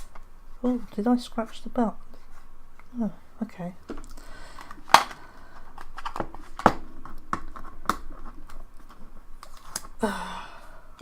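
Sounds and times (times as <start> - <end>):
packaging clicks and taps: 3.9 - 9.9
packaging rustling and scraping: 4.6 - 10.0.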